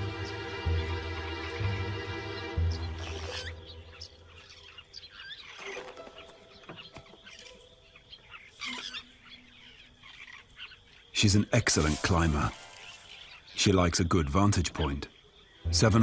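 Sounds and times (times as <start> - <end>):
background music: 0.0 - 4.8, 11.8 - 13.6, 15.6 - 16.0
bird chirps and calls: 2.5 - 11.1.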